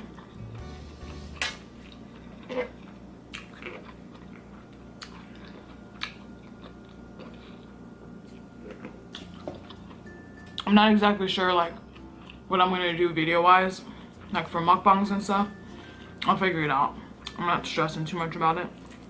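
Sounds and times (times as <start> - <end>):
person chewing food: 1.0 - 10.1.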